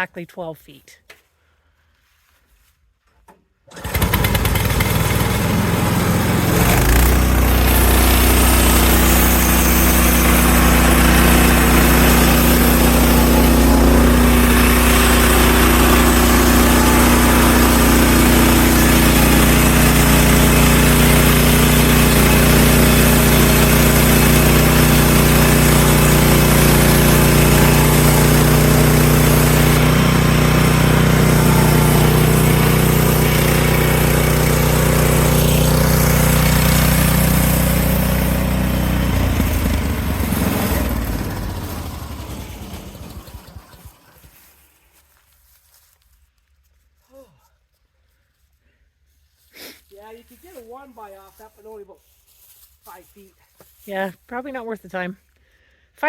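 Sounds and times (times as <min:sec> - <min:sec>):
sawmill engine running: 0:03.7 - 0:44.3.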